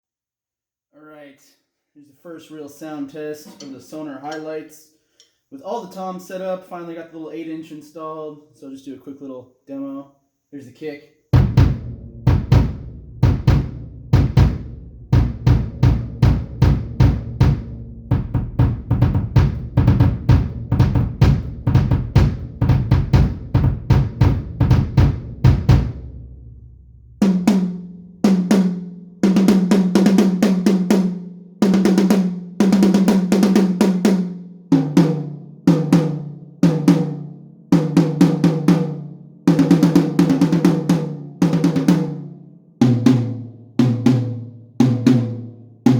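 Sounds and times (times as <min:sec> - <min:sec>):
toms ringing: 0:03.0 - 0:04.6
kick drum beats: 0:11.4 - 0:26.1.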